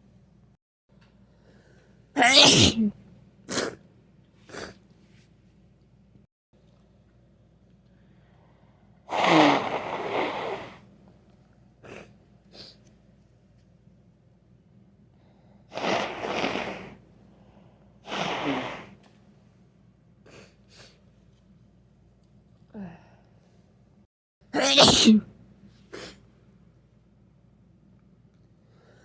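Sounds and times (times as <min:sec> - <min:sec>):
person sneezing: 0:02.2 - 0:03.8, 0:09.1 - 0:10.7, 0:24.6 - 0:25.3.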